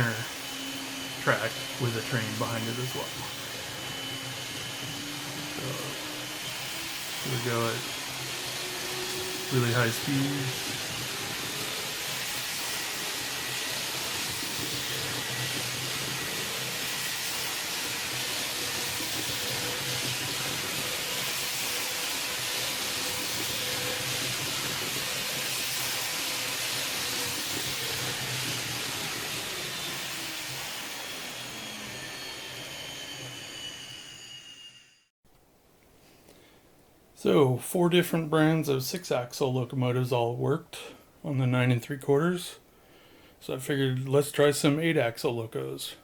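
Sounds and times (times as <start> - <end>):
model train motor whirring: 0.0 - 35.1.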